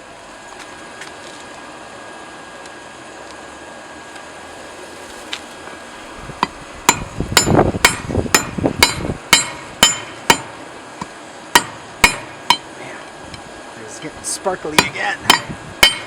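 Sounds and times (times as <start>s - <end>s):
steady hiss: 0.0s - 16.0s
hammer ringing on hot steel: 6.4s - 12.8s, 13.9s - 16.0s.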